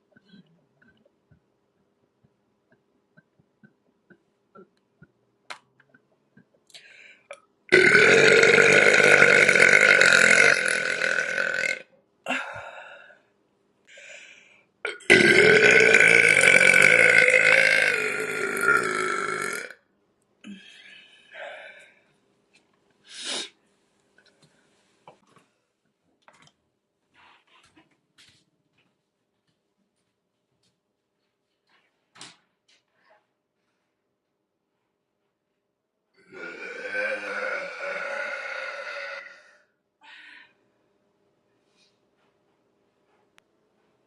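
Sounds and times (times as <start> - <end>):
woman burping: 7.7 - 12.6, 14.8 - 19.8, 36.2 - 39.4.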